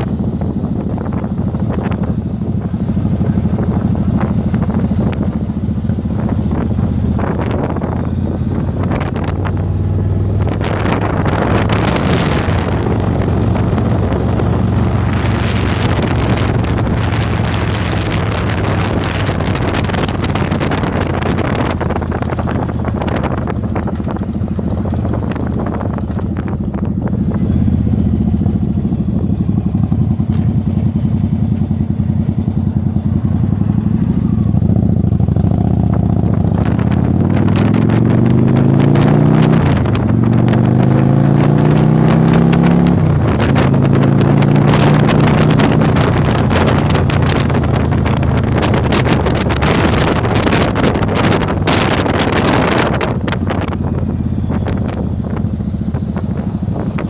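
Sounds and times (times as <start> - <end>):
motorcycle engine running: 0.0 - 57.0
wind buffeting microphone: 0.0 - 57.0.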